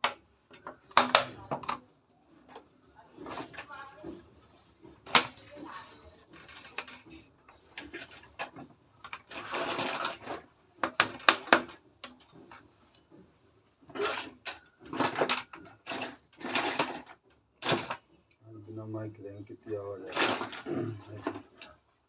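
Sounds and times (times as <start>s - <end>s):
plastic toy clicks and knocks: 0.0s - 1.8s, 5.0s - 5.4s, 6.3s - 12.6s, 13.9s - 18.0s, 20.1s - 21.7s
plastic rustle: 0.6s - 18.2s, 19.6s - 21.9s.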